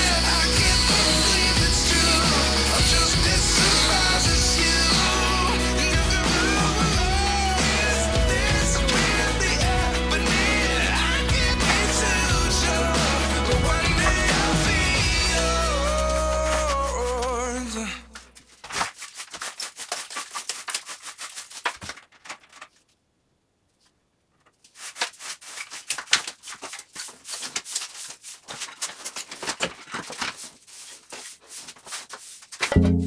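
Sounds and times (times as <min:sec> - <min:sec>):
rapid clicking and scraping: 0:07.6 - 0:17.4, 0:18.4 - 0:22.8, 0:24.5 - 0:32.8.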